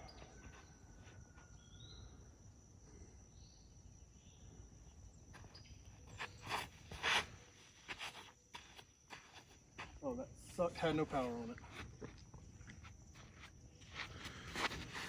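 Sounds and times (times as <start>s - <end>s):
insects droning: 0.0s - 15.0s
brief scuffing sounds: 6.2s - 9.9s.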